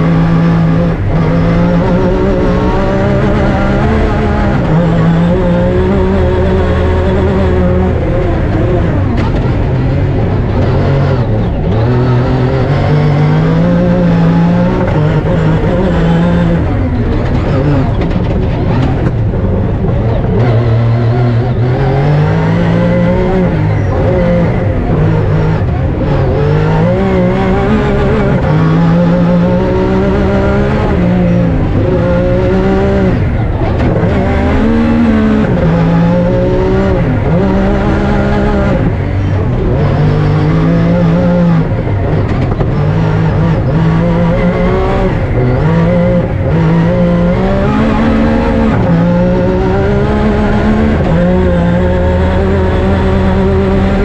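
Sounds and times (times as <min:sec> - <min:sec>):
car engine revving through gears: 0:00.0 - 0:54.0.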